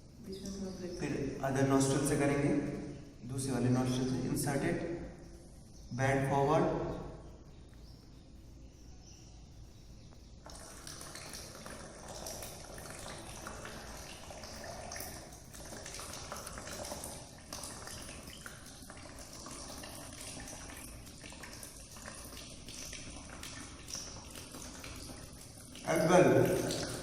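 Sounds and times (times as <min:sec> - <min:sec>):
water trickling from nose: 0:10.2 - 0:27.0.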